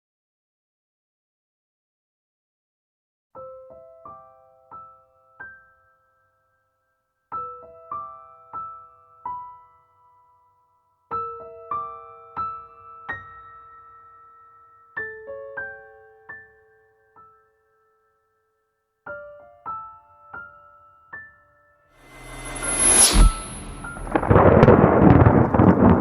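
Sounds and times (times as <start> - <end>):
soft solo piano: 3.4 - 6.3, 7.3 - 10.5, 11.1 - 18.1, 19.0 - 21.7.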